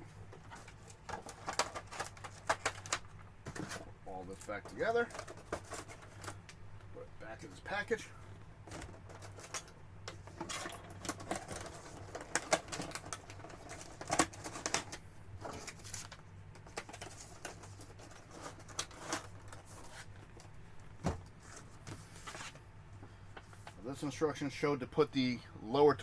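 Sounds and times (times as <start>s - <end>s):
plastic packaging crinkling: 0.5s - 3.2s, 9.0s - 20.5s.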